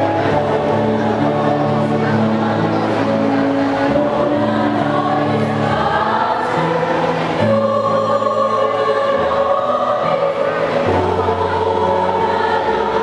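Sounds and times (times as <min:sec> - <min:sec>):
choir singing in parts: 0:00.0 - 0:13.0.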